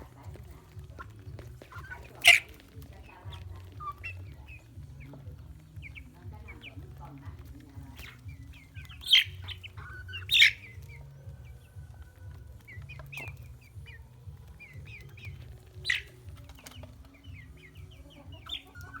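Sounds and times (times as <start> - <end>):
chickens chirping: 0.0 - 19.0
loud sharp chicken calls: 2.2 - 2.5, 9.0 - 10.8, 15.8 - 16.2.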